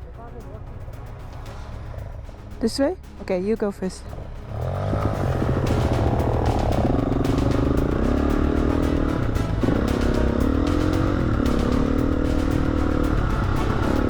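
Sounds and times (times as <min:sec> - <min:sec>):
dirt bike engine revving: 0:04.0 - 0:14.0.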